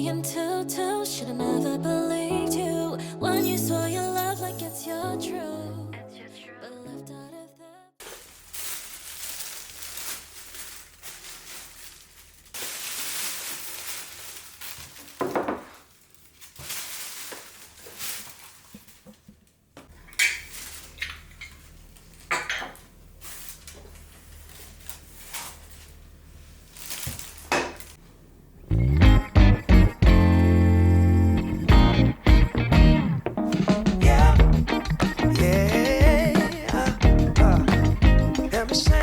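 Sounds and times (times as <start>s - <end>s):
soft shuffling and hiss: 8.0s - 28.2s
dishes and cutlery clinking: 20.0s - 21.6s, 22.3s - 22.8s.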